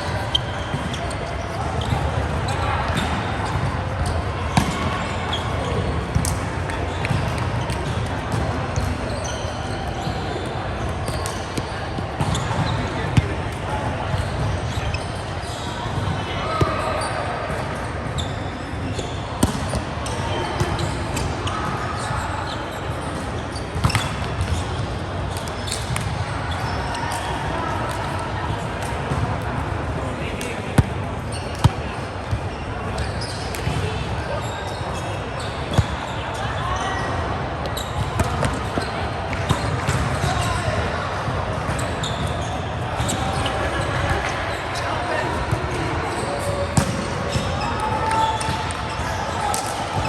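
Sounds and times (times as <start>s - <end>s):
echoing hall noise: 0.0s - 50.0s
volleyball strikes: 2.9s - 5.1s, 19.4s - 20.0s, 46.4s - 50.0s
shoe squeaks: 8.8s - 12.8s, 14.1s - 15.8s, 31.3s - 37.1s, 41.7s - 45.0s.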